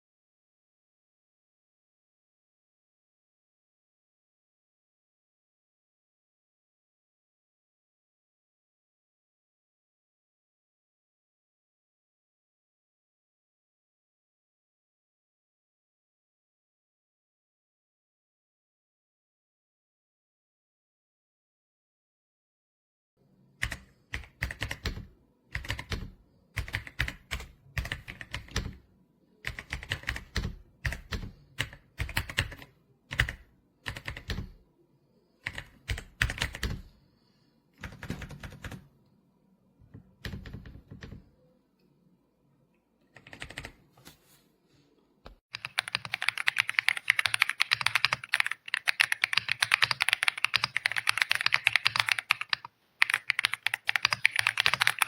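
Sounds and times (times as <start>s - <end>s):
typing on mechanical keyboard: 23.6s - 28.8s, 29.4s - 34.6s, 35.4s - 36.9s, 37.8s - 38.9s, 40.2s - 41.3s, 43.2s - 43.8s, 45.5s - 55.0s.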